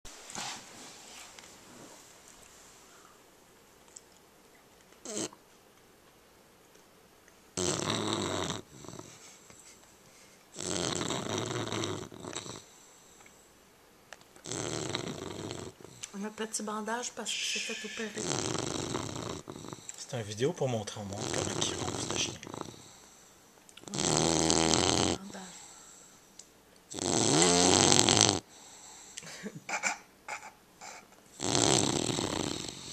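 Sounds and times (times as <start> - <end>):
puppy snoring: 5.0 - 5.4, 7.6 - 9.4, 10.5 - 13.2, 14.4 - 16.4, 17.6 - 20.0, 20.9 - 26.2, 26.9 - 29.2, 29.8 - 32.9
puppy breathing: 17.6 - 20.0.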